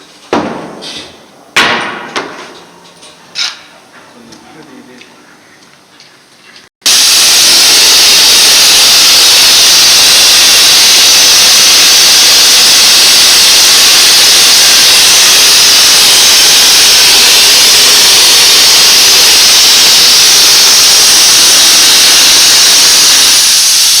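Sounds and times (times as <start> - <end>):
compressed air hissing from nozzle: 6.9 - 24.0.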